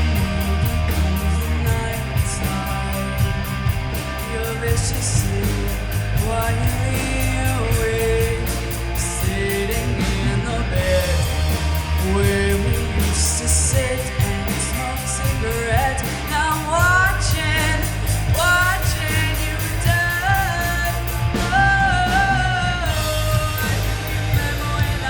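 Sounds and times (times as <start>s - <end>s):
live rock band playing: 0.0s - 25.0s
person singing: 0.0s - 25.0s
steady cymbal beat: 0.0s - 25.0s.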